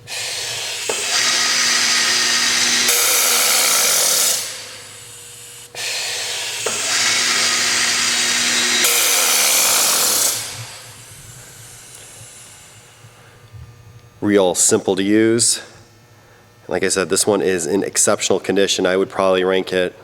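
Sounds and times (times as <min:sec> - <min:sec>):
drill motor hissing whine: 0:00.0 - 0:18.2.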